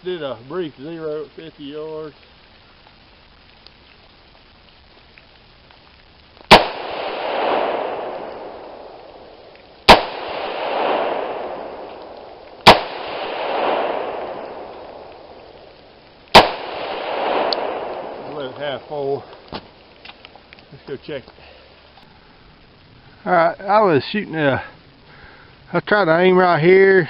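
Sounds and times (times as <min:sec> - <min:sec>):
rifle shots with rolling echo: 0:06.5 - 0:19.8.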